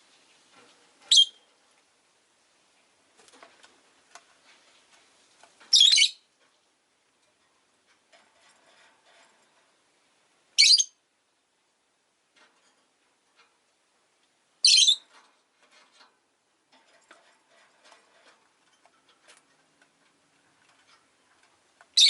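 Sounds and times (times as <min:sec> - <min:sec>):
faint clicks and rustling: 0:00.0 - 0:10.4, 0:11.5 - 0:22.0
lovebird shrill harsh calls: 0:01.1 - 0:01.4, 0:05.7 - 0:06.2, 0:10.6 - 0:11.0, 0:14.6 - 0:15.0.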